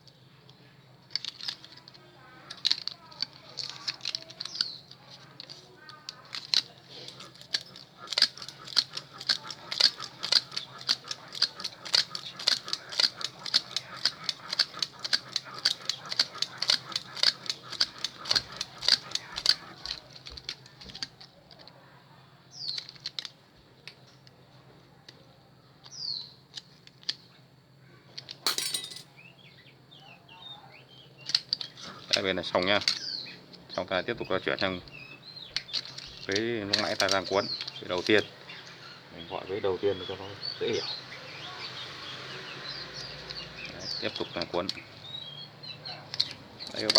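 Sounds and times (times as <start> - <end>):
wire winding clicks: 1.1 - 21.7, 22.6 - 24.3, 31.2 - 33.4, 34.4 - 39.0, 42.6 - 46.9
wire scraping: 28.5 - 29.1.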